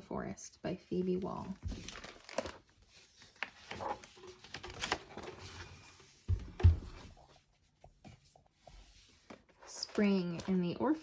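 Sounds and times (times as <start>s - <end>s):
paper pages turning: 1.1s - 6.1s, 8.8s - 11.0s.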